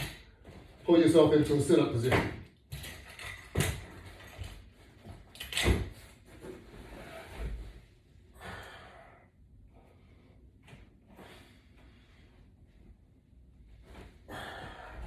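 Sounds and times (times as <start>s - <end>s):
knocks and shuffling on exercise mat: 0.0s - 15.0s
person breathing heavily: 8.3s - 10.4s, 14.2s - 15.0s.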